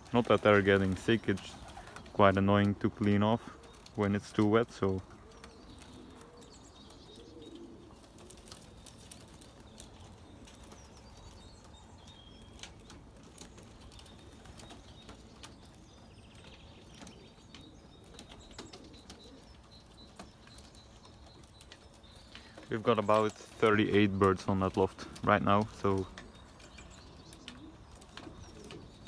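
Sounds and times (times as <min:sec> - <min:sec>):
pigeons cooing softly: 0:00.0 - 0:29.0.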